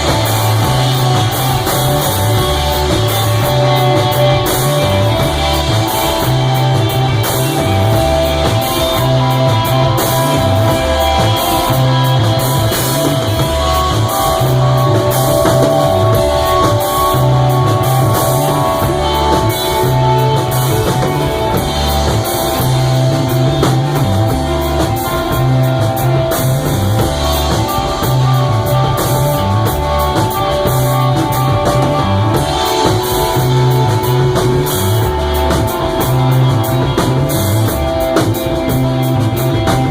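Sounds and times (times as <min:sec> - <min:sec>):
bass line: 0:00.0 - 0:39.9
drum kit and cymbals: 0:00.0 - 0:39.9
electric guitar long notes: 0:00.0 - 0:39.9.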